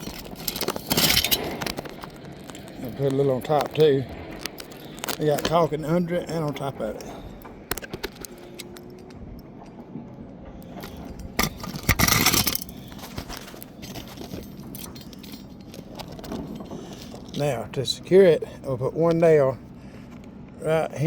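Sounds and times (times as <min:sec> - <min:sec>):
small metal items clinking: 0:00.0 - 0:07.2, 0:10.8 - 0:17.5.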